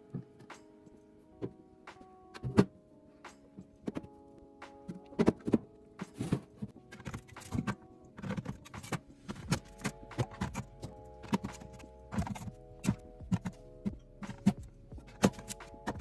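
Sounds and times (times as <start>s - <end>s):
soft background music: 0.0s - 16.0s
household items clicking and knocking: 4.8s - 16.0s.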